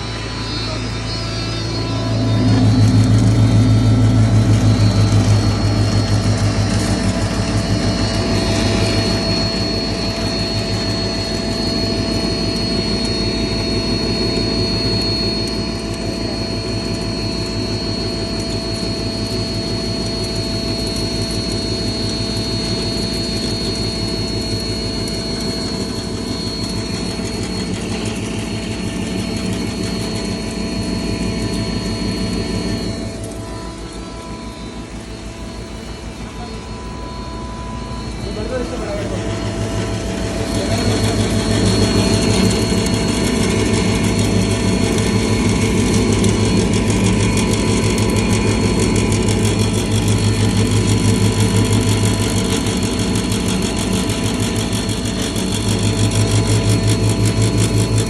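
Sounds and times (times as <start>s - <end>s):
grinding mill running: 0.0s - 58.0s.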